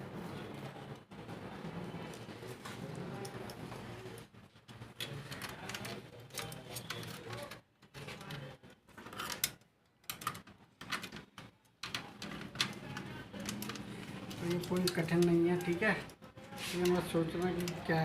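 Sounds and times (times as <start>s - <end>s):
plastic parts clicking: 4.7s - 18.0s.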